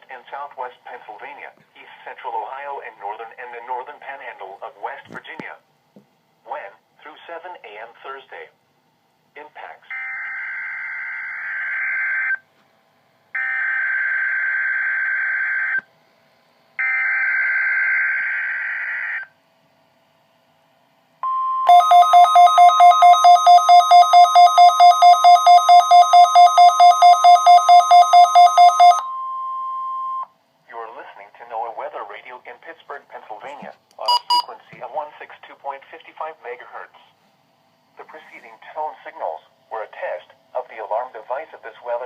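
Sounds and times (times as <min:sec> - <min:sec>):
weather radio alarm tone: 0:21.2 - 0:30.3, 0:34.1 - 0:34.5
loud electronic beeping: 0:34.1 - 0:34.5.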